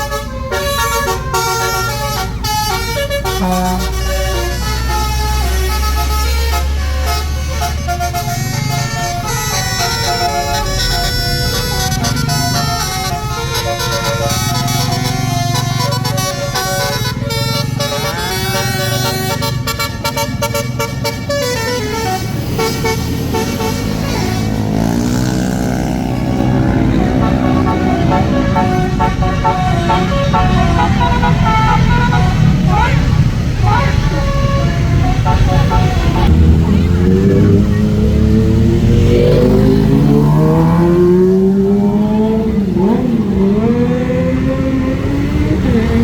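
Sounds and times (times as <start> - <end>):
musical air horn tune: 0.0 - 36.4
bus engine running: 0.0 - 46.0.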